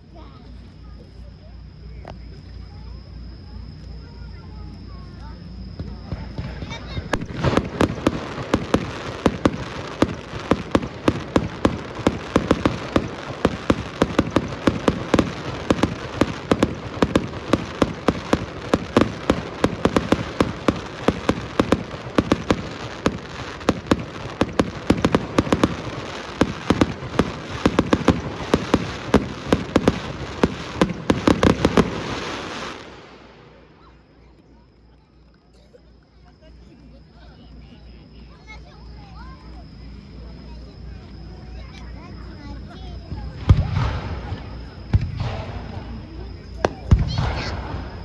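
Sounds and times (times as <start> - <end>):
continuous rumble: 0.0 - 48.0
fireworks bangs and crackles: 5.7 - 34.2, 41.6 - 48.0.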